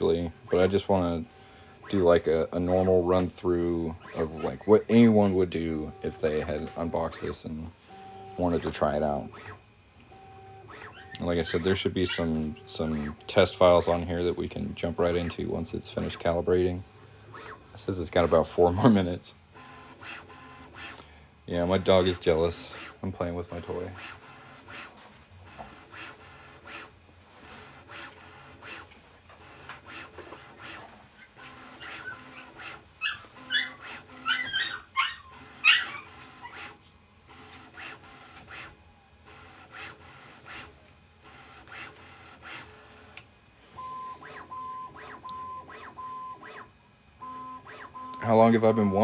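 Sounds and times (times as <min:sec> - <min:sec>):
printer motors ticking and buzzing: 0:00.0 - 0:49.0
dog whining: 0:31.8 - 0:36.7
short beeping tones: 0:43.8 - 0:46.4, 0:47.2 - 0:49.0.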